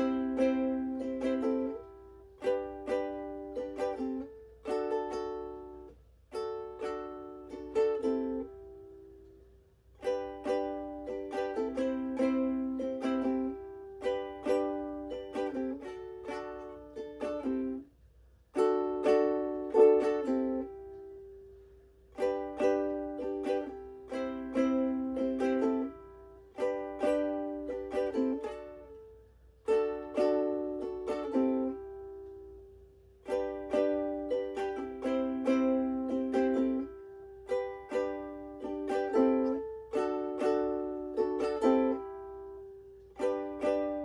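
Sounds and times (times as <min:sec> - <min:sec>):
ukulele strumming: 0:00.0 - 0:44.0.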